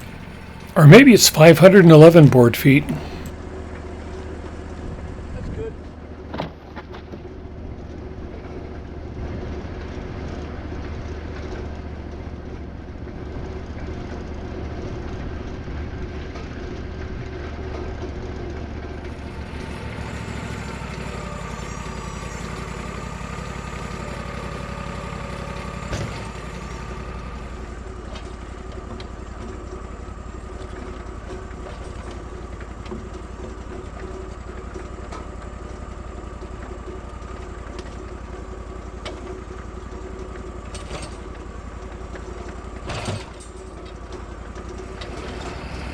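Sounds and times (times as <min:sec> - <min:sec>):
sawmill engine running: 0:19.1 - 0:27.8.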